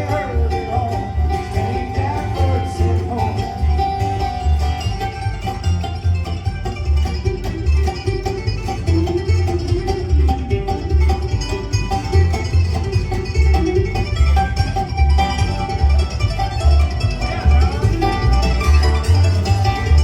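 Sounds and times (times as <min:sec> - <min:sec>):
country band instrumental: 0:00.0 - 0:20.0
plucked strings picking: 0:00.0 - 0:20.0
steady bass beat: 0:00.0 - 0:20.0.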